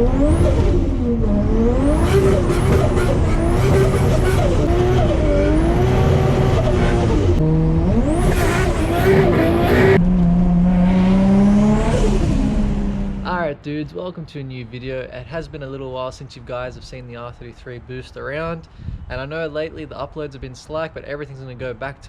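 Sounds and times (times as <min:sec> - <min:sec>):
car engine revving and shifting: 0:00.0 - 0:13.3.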